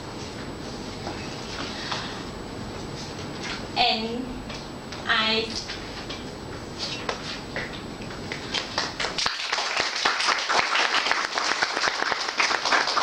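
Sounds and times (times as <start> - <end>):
audience clapping: 8.3 - 13.0.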